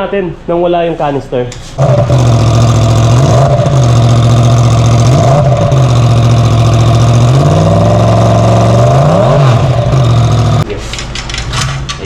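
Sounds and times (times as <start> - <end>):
motorcycle engine idling: 1.8 - 10.6
engine revving: 1.8 - 10.7.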